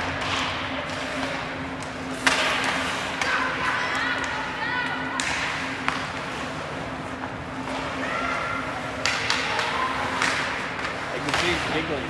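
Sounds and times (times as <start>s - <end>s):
hockey sticks and puck knocking: 1.2s - 3.4s, 5.2s - 6.3s, 9.0s - 11.7s.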